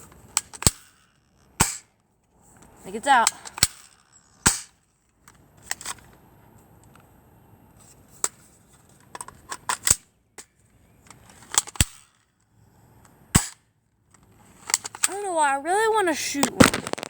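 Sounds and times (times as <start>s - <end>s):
airsoft gun clicks and snaps: 0.3s - 2.0s, 2.6s - 6.2s, 9.2s - 12.3s, 13.0s - 13.6s, 14.2s - 15.2s.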